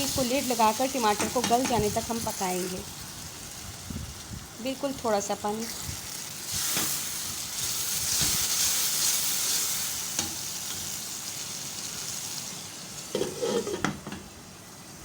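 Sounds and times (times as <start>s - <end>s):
masala sizzling in hot oil: 0.0s - 15.0s
spoon stirring in a pot: 13.1s - 14.0s.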